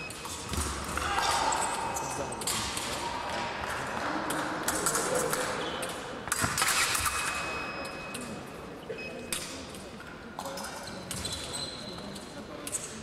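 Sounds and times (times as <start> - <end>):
fencing blades clinking: 0.0 - 8.5, 12.1 - 13.0.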